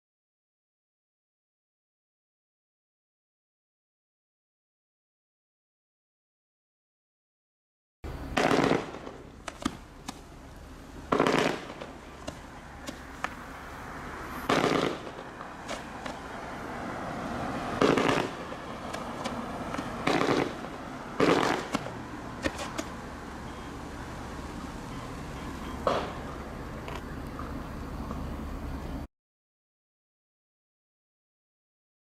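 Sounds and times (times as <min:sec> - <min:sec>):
fireworks bursts: 0:08.1 - 0:26.8.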